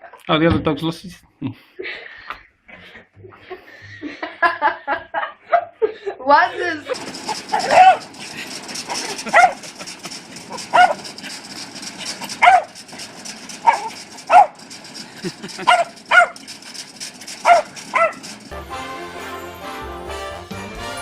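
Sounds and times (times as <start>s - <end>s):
dog barking: 7.5s - 8.1s, 9.3s - 9.7s, 10.6s - 11.0s, 12.4s - 12.8s, 13.6s - 14.6s, 15.6s - 16.4s, 17.4s - 18.3s.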